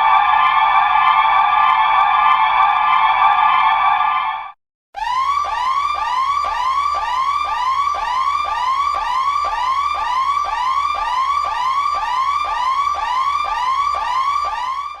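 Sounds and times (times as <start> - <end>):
electronic siren yelping: 5.0 - 15.0.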